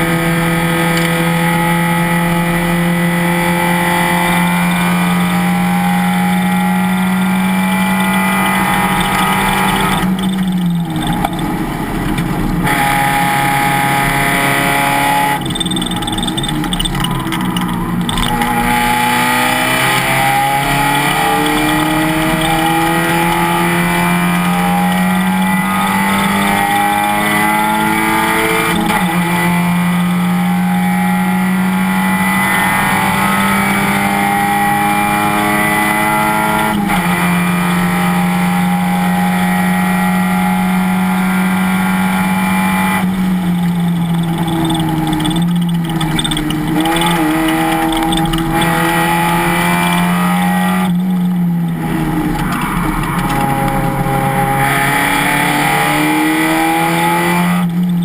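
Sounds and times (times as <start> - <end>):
race car engine accelerating: 0.0 - 58.0.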